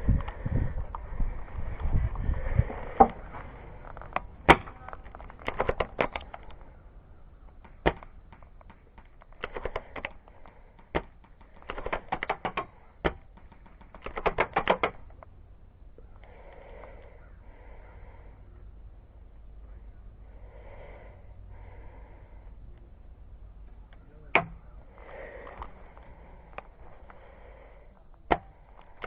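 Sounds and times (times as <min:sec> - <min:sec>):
airsoft rifle shots: 0:10.8 - 0:15.0.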